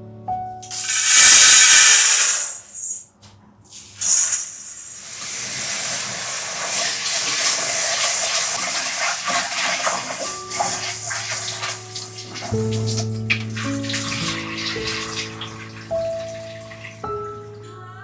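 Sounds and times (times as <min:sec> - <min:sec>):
brief burst: 0:00.6 - 0:03.0
loud hiss: 0:00.6 - 0:03.0, 0:03.7 - 0:08.6
steady rushing hiss: 0:00.6 - 0:03.0, 0:03.8 - 0:06.8.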